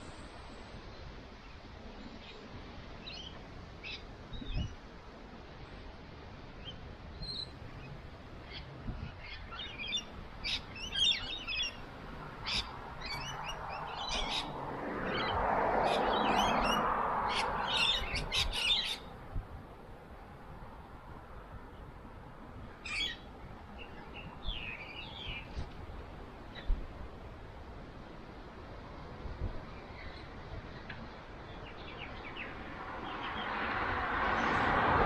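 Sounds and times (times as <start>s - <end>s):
birds chirping: 6.6s - 19.1s, 22.7s - 25.7s, 29.7s - 33.8s
rushing noise: 10.2s - 19.4s, 32.0s - 35.0s.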